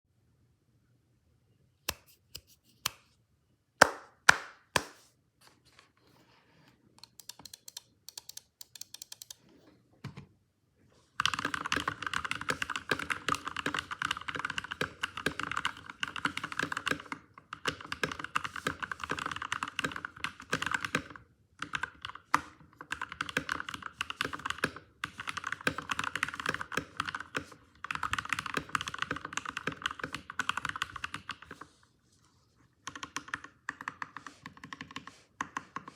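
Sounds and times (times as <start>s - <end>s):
mechanical keyboard typing: 7.0s - 9.4s, 11.2s - 31.6s, 32.8s - 35.9s.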